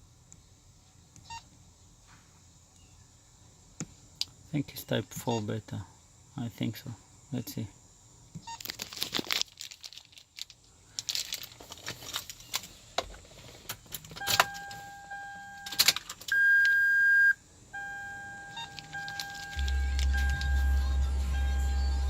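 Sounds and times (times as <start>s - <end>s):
car keys jangling: 13.9s - 14.9s, 15.6s - 16.4s, 18.7s - 20.6s
electronic beep tone: 14.2s - 22.0s.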